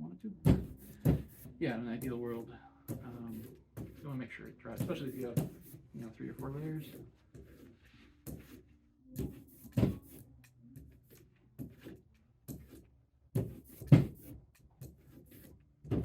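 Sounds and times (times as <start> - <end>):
objects knocking on worktable: 0.4 - 1.4, 13.4 - 14.2.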